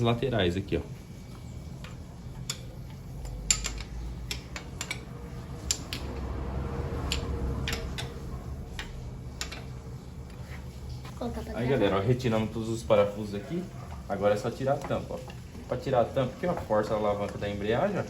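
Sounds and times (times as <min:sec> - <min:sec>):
low mechanical rumble: 0:01.2 - 0:12.9
metallic tool clicks: 0:01.8 - 0:06.2, 0:07.1 - 0:09.7.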